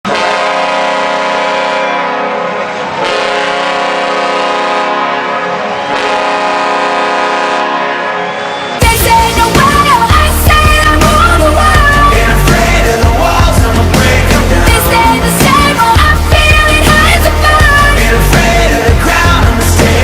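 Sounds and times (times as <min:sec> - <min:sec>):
goal horn deep chord: 0:00.1 - 0:08.4.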